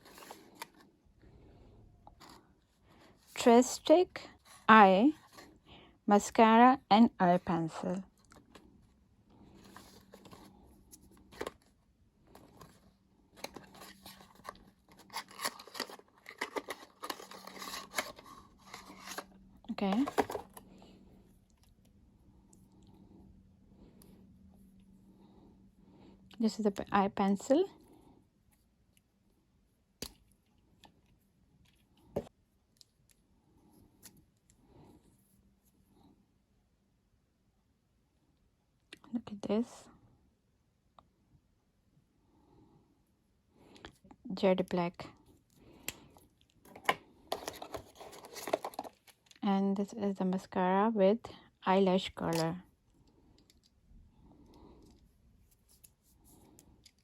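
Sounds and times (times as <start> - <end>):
packaging rustling: 13.4 - 20.6, 46.7 - 49.3
wrapping and box crackling: 13.4 - 20.6, 47.3 - 49.3.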